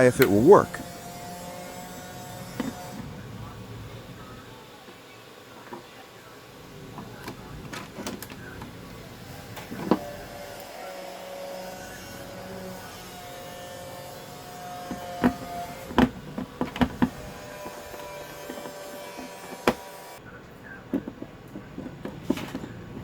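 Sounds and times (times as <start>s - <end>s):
faint steady whine: 0.0s - 23.0s.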